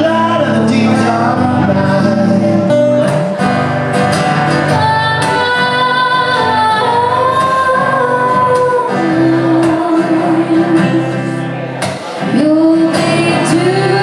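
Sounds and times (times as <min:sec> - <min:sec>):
guitar accompaniment: 0:00.0 - 0:14.0
woman singing: 0:04.6 - 0:11.3, 0:12.2 - 0:14.0.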